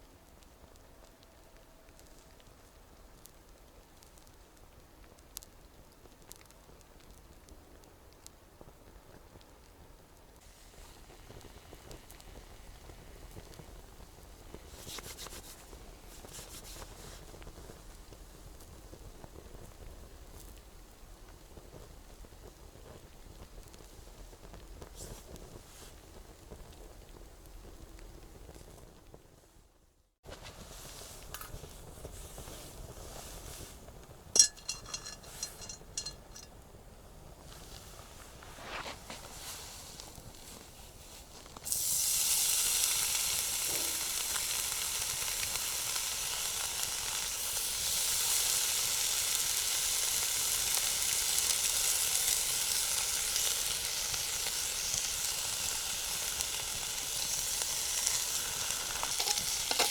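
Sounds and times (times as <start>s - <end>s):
faint outdoor background: 0.0s - 59.9s
log fire crackling and hissing: 0.0s - 59.9s
metal cookware clinking: 34.4s - 36.5s, 59.0s - 59.9s.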